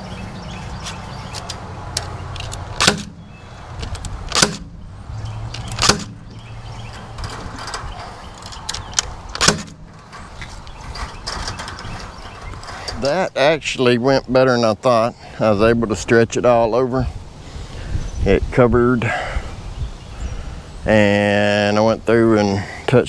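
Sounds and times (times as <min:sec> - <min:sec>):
wire handling clicks and rattles: 0:00.6 - 0:13.3
staple gun firing into wood: 0:02.4 - 0:03.2, 0:04.3 - 0:04.8, 0:05.6 - 0:06.3, 0:08.9 - 0:09.9.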